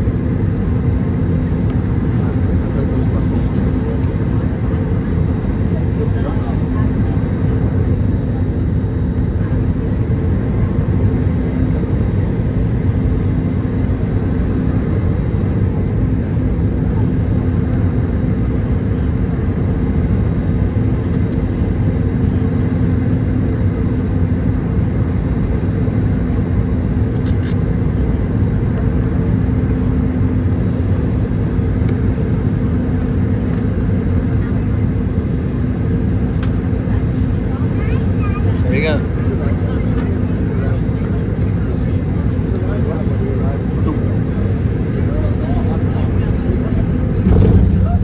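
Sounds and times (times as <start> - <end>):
aircraft cabin engine drone: 0.0 - 48.0
rushing airflow: 47.0 - 48.0.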